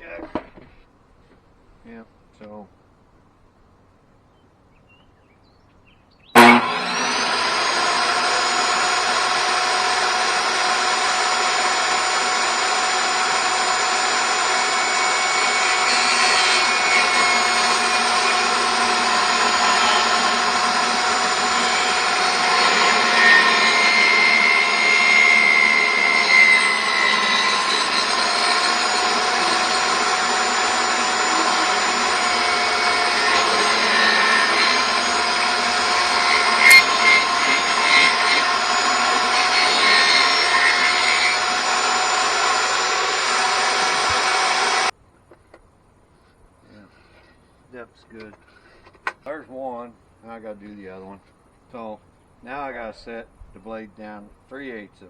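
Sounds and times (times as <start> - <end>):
saw blade cutting wood: 6.4 - 44.9
table saw motor whine: 6.4 - 44.9.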